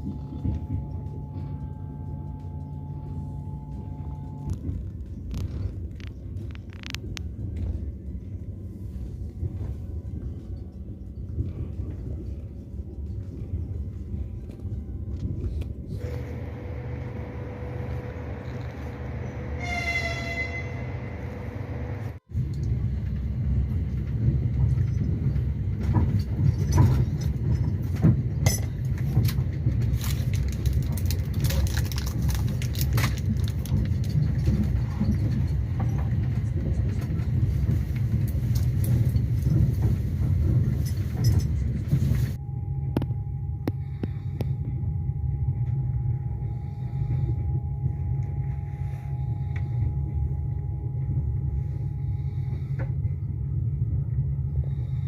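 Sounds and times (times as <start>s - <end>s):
train rattling and knocking: 0.0s - 55.0s
train rumbling: 0.0s - 55.0s
faint steady whine: 42.3s - 55.0s.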